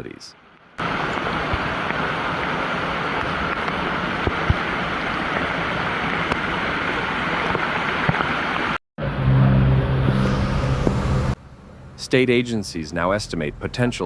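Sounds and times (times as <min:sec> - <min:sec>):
floodwater rushing: 0:00.8 - 0:08.8.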